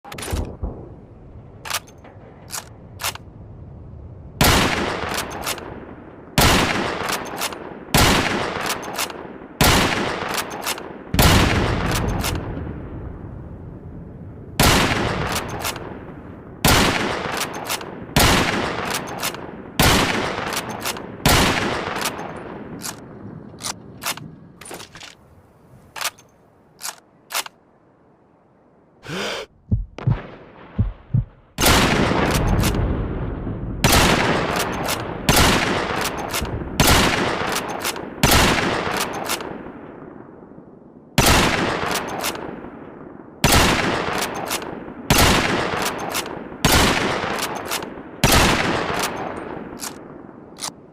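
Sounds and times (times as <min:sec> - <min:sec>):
rifle shots echoing: 0:04.4 - 0:12.6, 0:14.6 - 0:24.3, 0:30.0 - 0:33.0, 0:33.8 - 0:40.3, 0:41.2 - 0:50.8.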